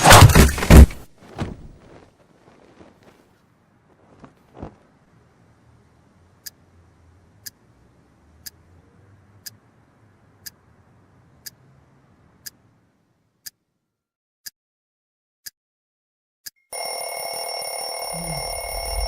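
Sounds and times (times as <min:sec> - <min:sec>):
clock ticking: 0:07.4 - 0:07.6, 0:08.4 - 0:08.7, 0:09.4 - 0:09.7, 0:10.4 - 0:10.6.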